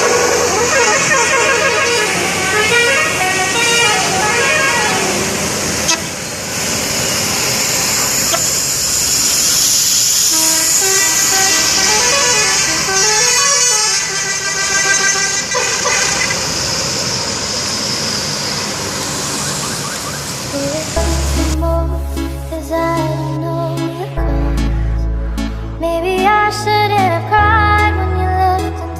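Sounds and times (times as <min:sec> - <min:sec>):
multi-tone musical air horn: 0:00.0 - 0:06.3, 0:10.3 - 0:16.5
vehicle and traffic noise: 0:00.0 - 0:28.9.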